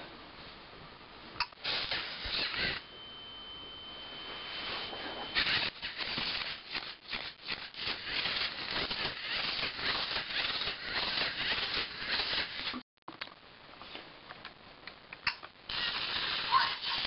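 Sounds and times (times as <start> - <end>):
steady high beep: 2.7 - 5.4.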